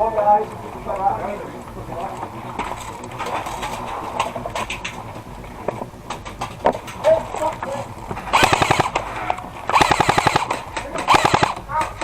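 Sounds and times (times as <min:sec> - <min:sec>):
faint scattered shots: 0:06.1 - 0:12.0
airsoft rifle firing bursts: 0:08.3 - 0:12.0.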